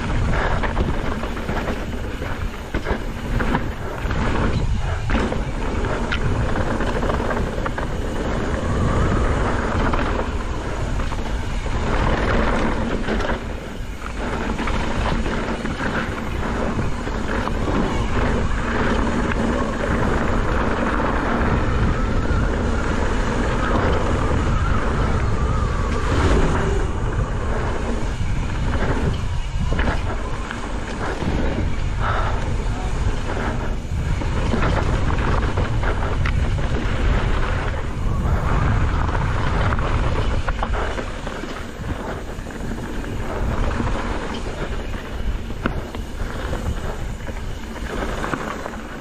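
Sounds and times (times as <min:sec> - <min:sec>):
bike rattling clicks and knocks: 0:00.0 - 0:49.0
knobby tyres on dirt: 0:00.0 - 0:49.0
wind on microphone: 0:00.0 - 0:49.0.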